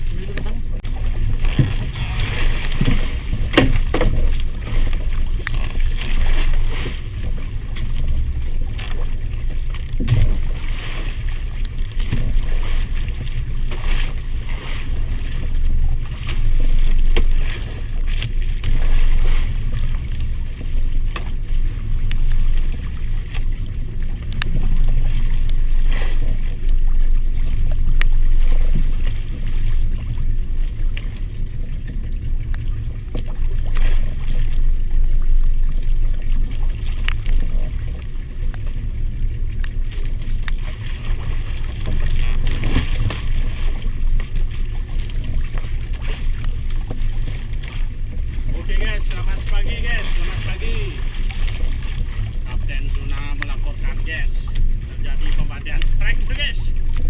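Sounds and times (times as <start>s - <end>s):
wind and water rumble: 0.0s - 57.0s.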